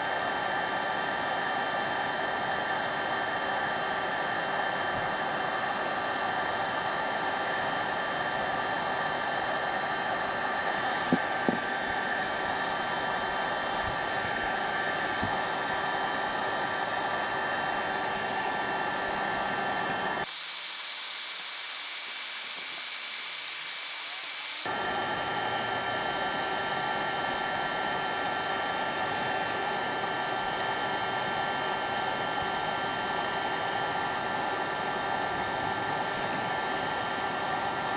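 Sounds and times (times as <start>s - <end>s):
heat gun blowing: 9.6s - 26.4s.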